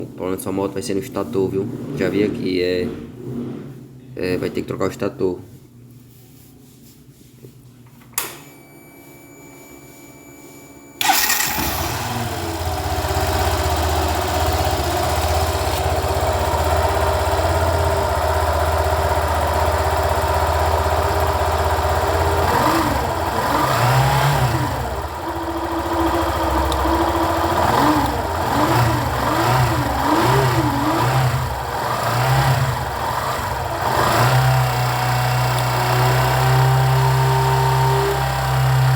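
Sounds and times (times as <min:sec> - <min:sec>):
motorcycle engine idling and revving: 0:11.0 - 0:38.9.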